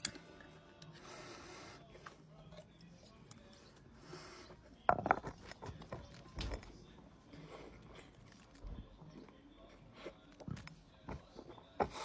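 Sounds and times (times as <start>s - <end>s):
person breathing: 0.9s - 2.2s.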